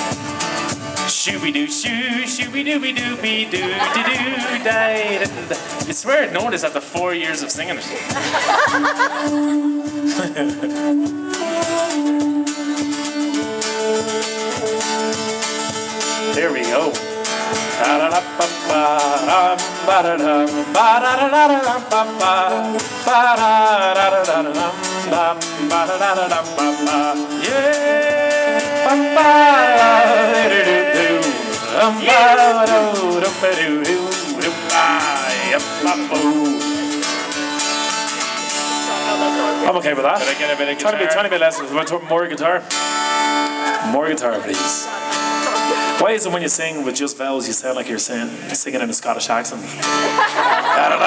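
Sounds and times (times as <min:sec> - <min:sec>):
held instrumental notes: 0:00.0 - 0:46.2
guitar strummed and picked: 0:00.0 - 0:47.1, 0:49.3 - 0:51.0
person singing: 0:01.1 - 0:05.8, 0:08.6 - 0:37.6, 0:38.8 - 0:42.0, 0:50.6 - 0:51.0.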